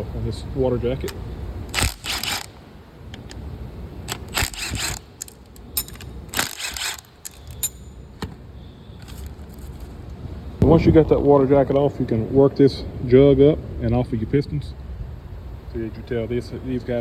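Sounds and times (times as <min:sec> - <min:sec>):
sharp clicks: 0:04.1 - 0:07.9
wrench and bolts clinking: 0:04.4 - 0:08.0.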